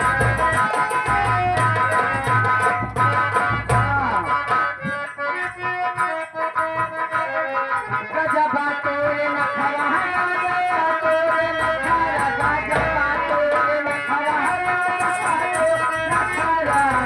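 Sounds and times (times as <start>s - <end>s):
drum beat: 0.0s - 5.0s.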